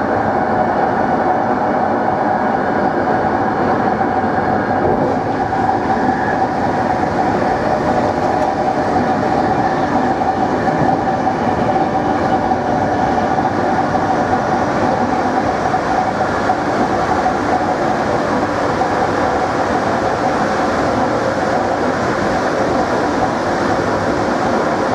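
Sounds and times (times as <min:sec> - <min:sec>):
train rail rumble: 0:00.0 - 0:24.9
electric traction motor whine: 0:03.6 - 0:16.9.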